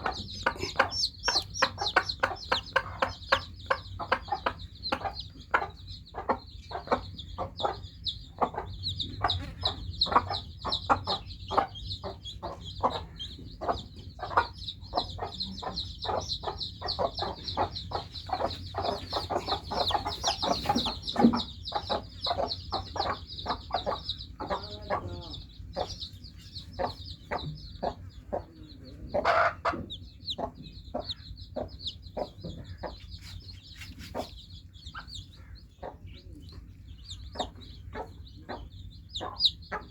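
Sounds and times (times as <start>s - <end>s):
chicks peeping: 0.0s - 39.9s
hen clucking: 0.0s - 39.9s.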